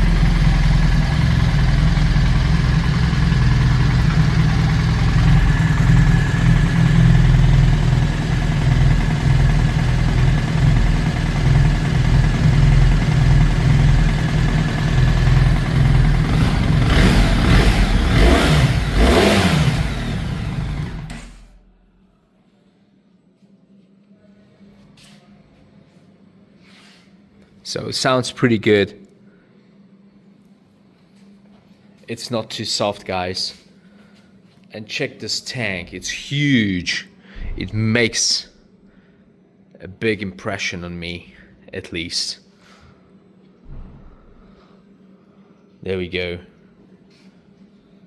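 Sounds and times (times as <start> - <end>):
motorcycle engine idling and revving: 0.0 - 21.7.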